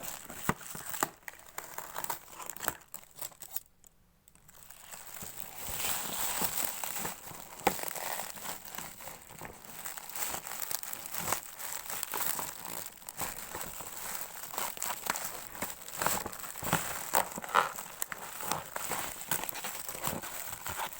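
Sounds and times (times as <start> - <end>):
packaging crinkling and rustling: 0.0 - 3.7, 4.3 - 20.9.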